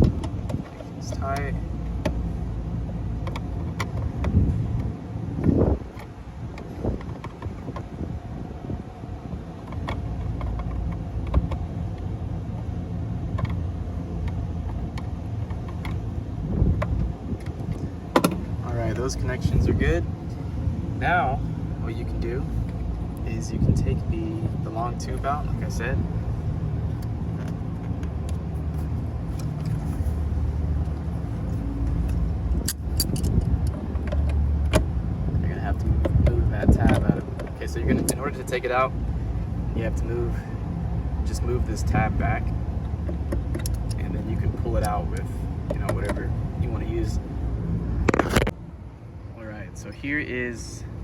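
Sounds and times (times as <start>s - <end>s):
mechanical hum and rumble: 0.0s - 51.0s
light clicks and taps: 42.8s - 46.3s.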